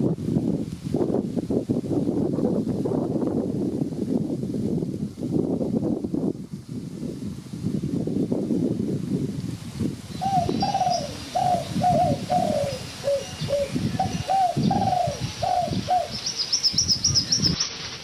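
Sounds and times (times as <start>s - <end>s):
bird calling down-slurred notes: 10.1s - 17.7s.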